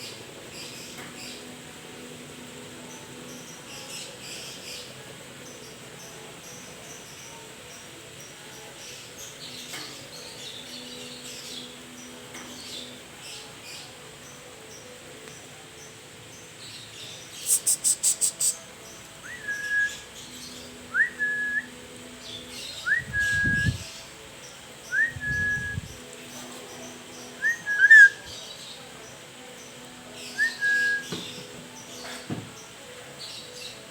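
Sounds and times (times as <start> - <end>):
lory upward-sliding whistle: 27.4 - 28.2.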